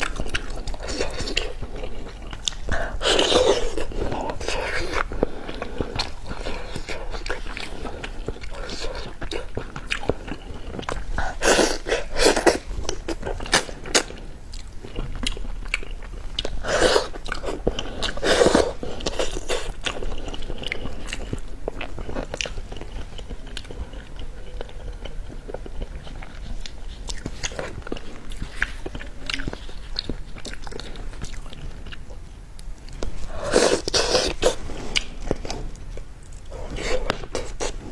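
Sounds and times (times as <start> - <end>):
person chewing food: 0.0 - 37.9.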